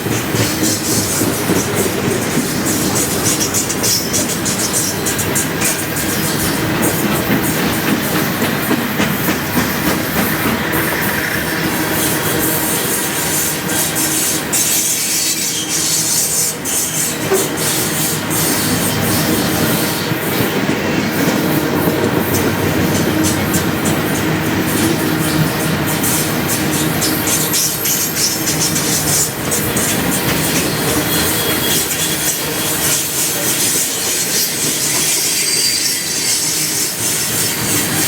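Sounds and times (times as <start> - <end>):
freight train cars rumbling: 0.0 - 38.0
wheels clicking over rail joints: 0.0 - 38.0.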